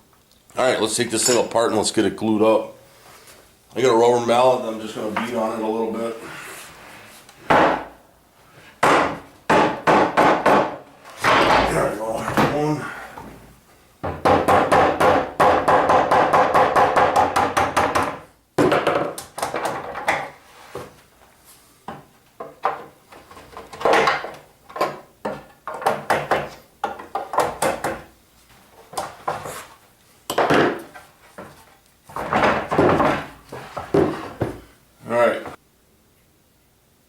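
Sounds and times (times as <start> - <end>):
wooden boards clattering: 10.6 - 12.6, 32.1 - 34.6.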